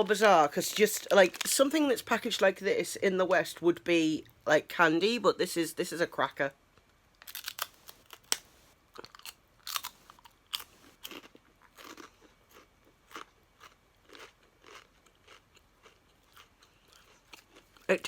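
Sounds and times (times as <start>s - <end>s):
rice cracker crunching: 0.0s - 2.5s, 7.2s - 18.0s.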